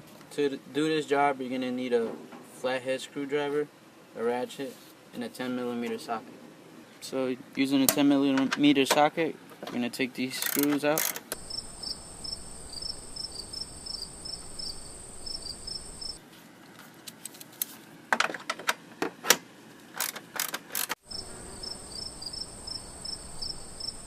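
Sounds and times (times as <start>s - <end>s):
insects chirping in a trill: 11.4s - 16.2s, 21.0s - 24.0s.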